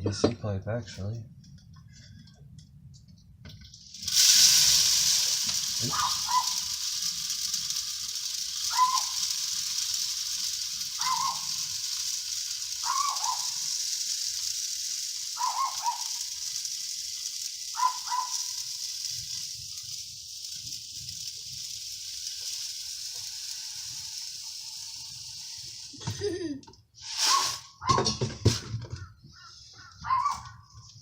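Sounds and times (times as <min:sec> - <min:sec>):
steady high hiss: 0:03.7 - 0:27.8
distant dog barking: 0:05.9 - 0:06.6, 0:11.0 - 0:11.5, 0:15.4 - 0:16.1, 0:17.8 - 0:18.4, 0:29.8 - 0:30.7.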